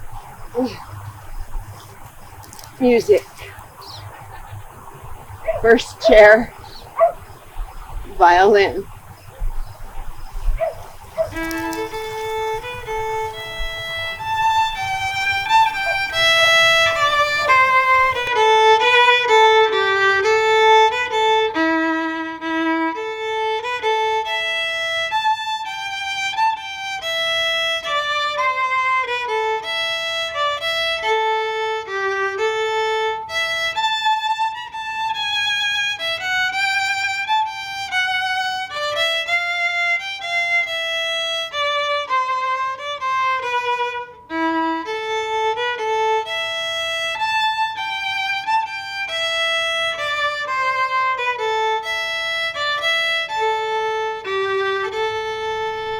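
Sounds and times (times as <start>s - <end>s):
violin playing a melody: 11.4s - 55.9s.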